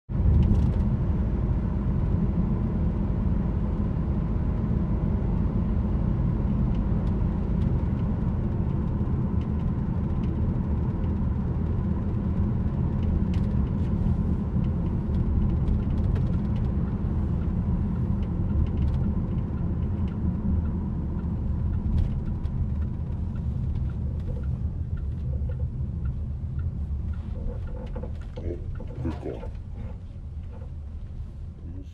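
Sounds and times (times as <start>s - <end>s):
car rumbling on the move: 0.1s - 31.9s.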